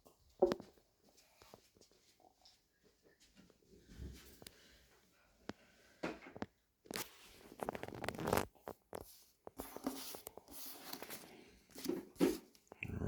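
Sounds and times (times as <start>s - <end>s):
foil packet crinkling and tearing: 7.5s - 8.5s.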